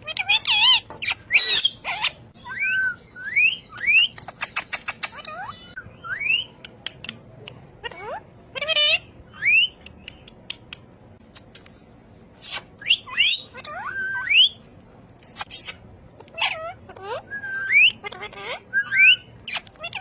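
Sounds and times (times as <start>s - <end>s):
parrot squawking: 0.0s - 6.5s, 7.8s - 9.8s, 12.4s - 14.6s, 15.2s - 20.0s
parrot whistling: 0.2s - 4.2s, 5.1s - 6.6s, 12.8s - 14.6s, 16.4s - 20.0s
parrot chirps and clicks: 3.3s - 8.8s, 9.4s - 11.8s, 12.4s - 20.0s.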